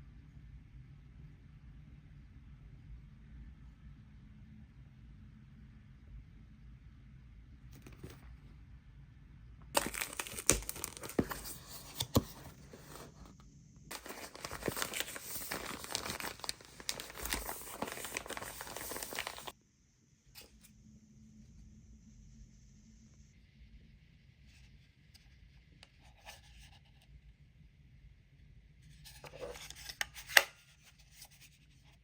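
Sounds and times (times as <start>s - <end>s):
packaging crinkling and tearing: 9.8s - 13.3s, 13.9s - 19.5s.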